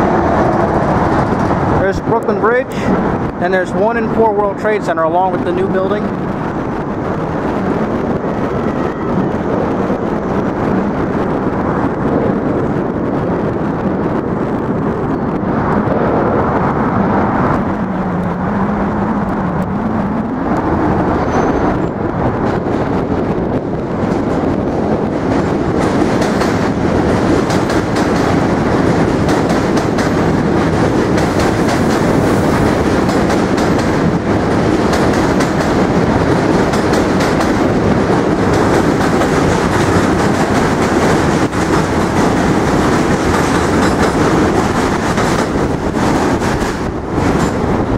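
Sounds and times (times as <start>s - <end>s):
subway train wheels rumbling: 0.0s - 47.9s.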